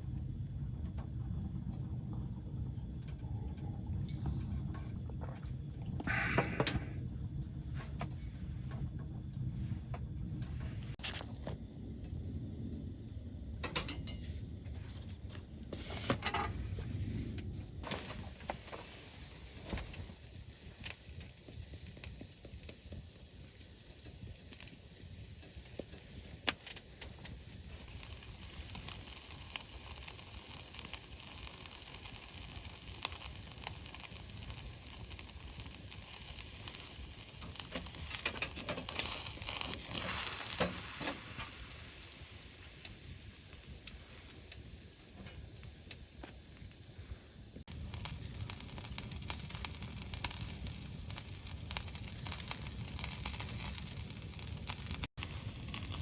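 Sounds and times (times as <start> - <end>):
food sizzling in a pan: 17.8 - 56.0.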